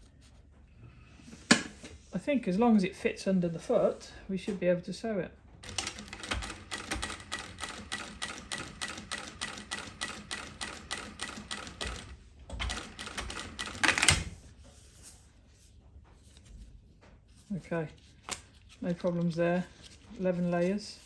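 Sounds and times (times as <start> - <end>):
sewing machine stitching: 5.6 - 14.3.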